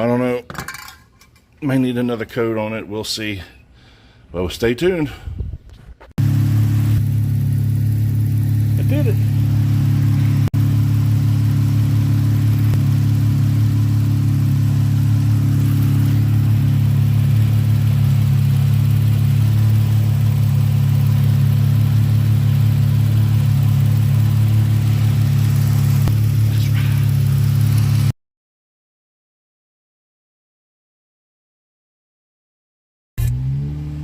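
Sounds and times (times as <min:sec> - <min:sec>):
car engine idling: 0:06.2 - 0:28.1.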